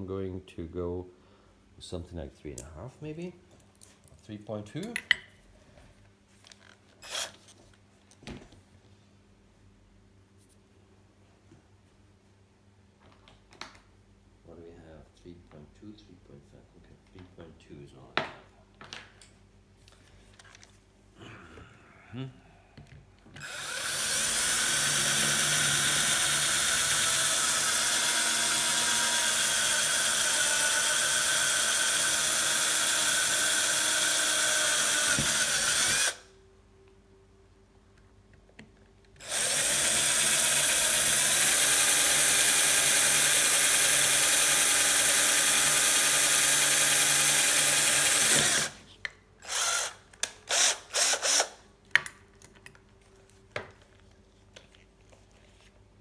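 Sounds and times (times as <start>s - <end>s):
electric drill drilling metal: 7.0s - 7.4s, 23.4s - 36.2s, 39.2s - 48.8s, 49.4s - 51.6s
drill trigger blips: 23.4s - 36.2s, 39.2s - 48.7s, 49.4s - 51.5s.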